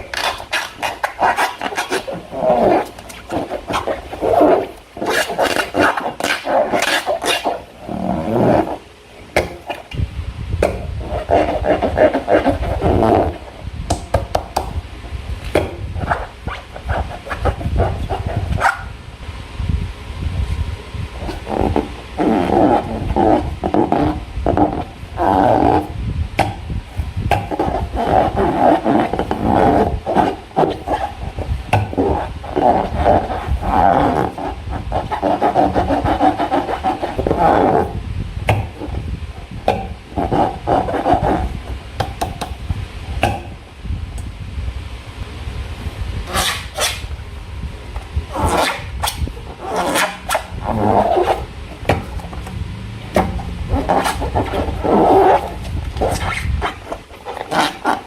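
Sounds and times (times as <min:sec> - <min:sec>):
low handling rumble: 0:50.4 - 0:57.2.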